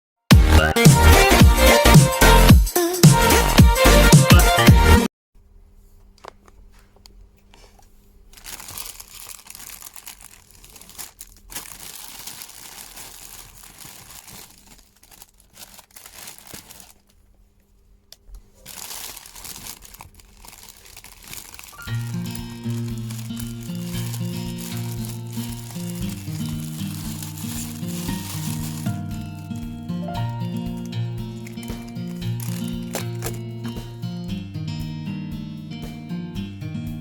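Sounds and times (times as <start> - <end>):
music: 0.3 - 5.1, 21.7 - 37.0
packaging crinkling and rustling: 6.1 - 34.0.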